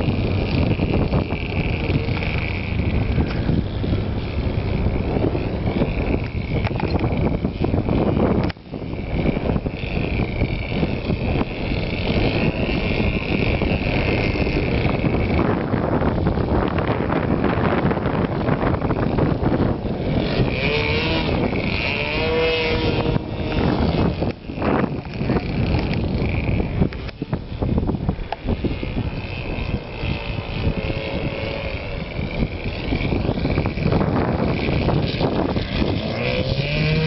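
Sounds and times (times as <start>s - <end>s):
model airplane engine whine: 0.0s - 37.0s
wind buffeting microphone: 0.0s - 37.0s.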